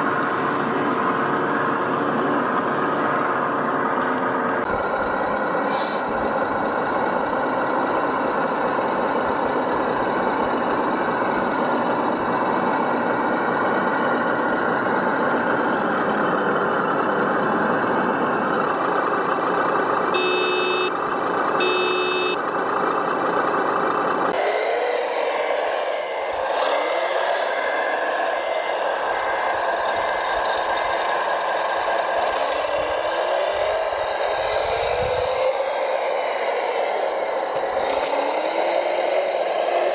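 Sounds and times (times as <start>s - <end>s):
radio-controlled machines engine: 0.0s - 39.9s
reversing beeps: 4.6s - 15.2s, 20.2s - 20.9s, 21.6s - 22.4s
rising motor whines: 24.4s - 39.9s.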